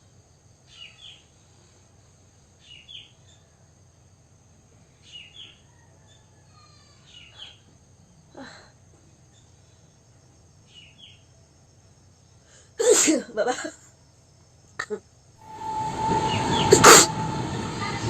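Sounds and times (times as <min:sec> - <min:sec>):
faint bird chirps: 0:00.7 - 0:01.4, 0:15.5 - 0:18.0
brief louder noise: 0:15.4 - 0:18.0.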